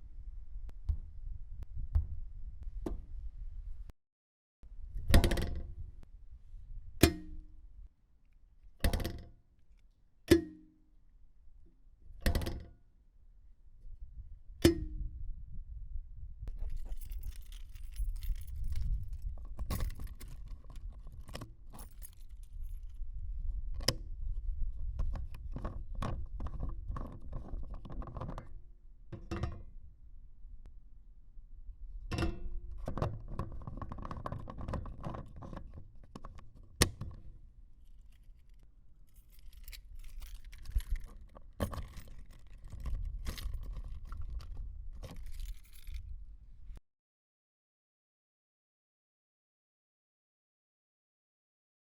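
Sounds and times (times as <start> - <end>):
sharp metal thunks with ring: 7.0 - 7.5, 10.3 - 10.7
small clicks clinks and rattles: 16.5 - 23.0, 37.8 - 46.1.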